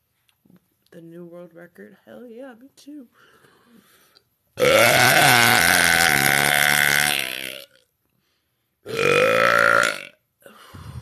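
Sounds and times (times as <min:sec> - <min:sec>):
woman burping: 0:04.6 - 0:07.8, 0:08.9 - 0:11.0.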